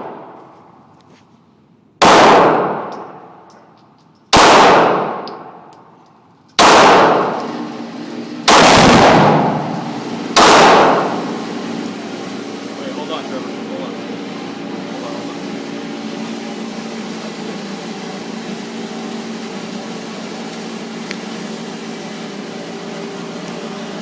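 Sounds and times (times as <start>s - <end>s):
pistol shots: 2.0s - 3.3s, 4.3s - 5.6s, 6.6s - 7.5s, 8.5s - 9.8s, 10.4s - 11.2s
long ringing echo: 8.6s - 21.0s.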